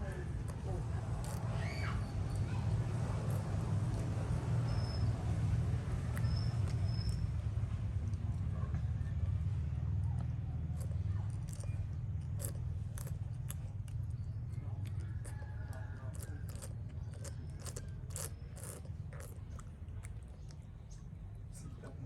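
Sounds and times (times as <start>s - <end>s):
monkey licking and eating: 0.0s - 21.7s
wet clicks and smacks: 5.7s - 8.5s, 10.0s - 21.2s.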